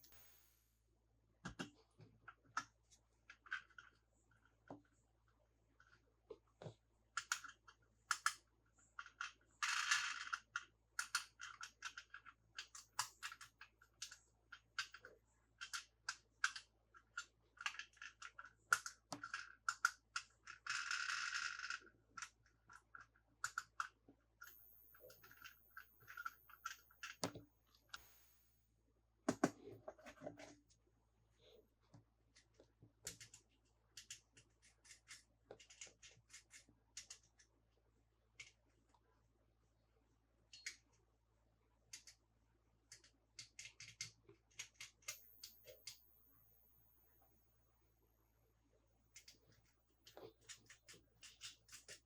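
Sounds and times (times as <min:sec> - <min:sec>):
small clicks and taps of toys: 0:01.4 - 0:05.0, 0:05.8 - 0:24.6, 0:31.9 - 0:37.5, 0:38.4 - 0:39.0, 0:40.5 - 0:41.0, 0:41.9 - 0:42.2, 0:42.9 - 0:46.0, 0:49.2 - 0:52.0.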